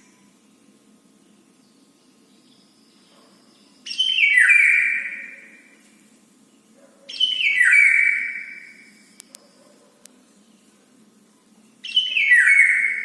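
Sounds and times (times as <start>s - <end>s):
bird calling: 3.3s - 5.6s, 7.1s - 9.6s, 11.8s - 13.0s.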